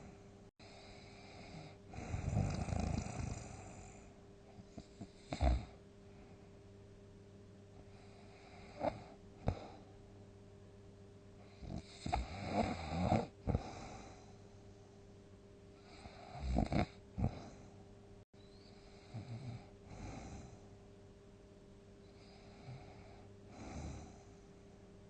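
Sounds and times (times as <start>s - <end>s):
faint steady hum: 0.0s - 25.0s
person snoring: 0.6s - 4.1s, 5.0s - 5.7s, 11.5s - 14.3s, 15.8s - 17.7s.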